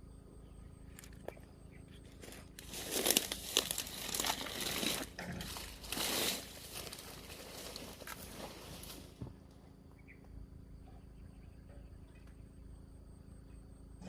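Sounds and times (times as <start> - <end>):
crinkling and rustling: 2.0 - 9.4.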